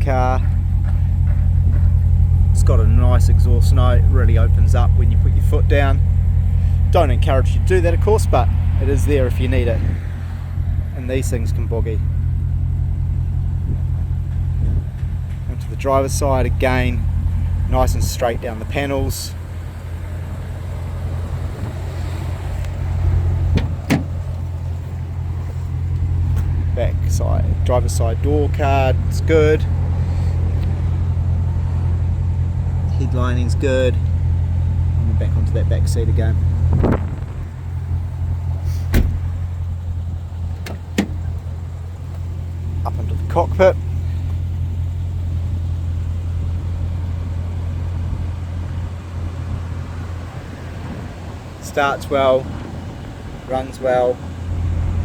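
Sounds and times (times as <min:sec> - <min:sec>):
low rumble: 0:00.0 - 0:51.6
car engine idling: 0:00.0 - 0:55.0
car door latch clicking: 0:23.5 - 0:24.2, 0:38.9 - 0:39.3, 0:40.6 - 0:41.3.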